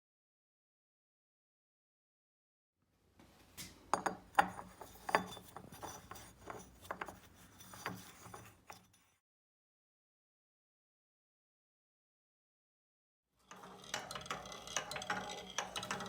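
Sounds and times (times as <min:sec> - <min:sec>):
hard parts clinking and knocking: 0:04.0 - 0:08.9.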